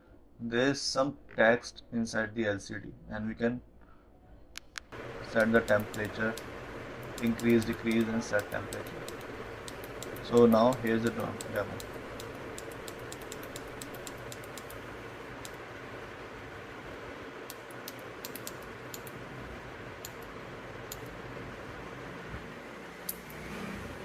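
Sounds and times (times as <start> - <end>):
push buttons clicking: 4.6 - 15.6, 17.4 - 19.2
background hiss: 4.6 - 24.0.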